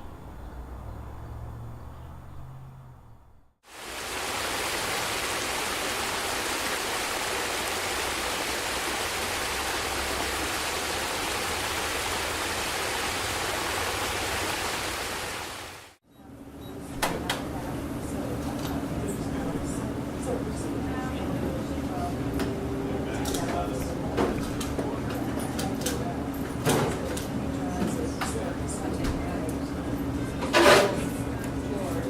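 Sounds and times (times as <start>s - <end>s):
rushing water: 3.7s - 16.0s.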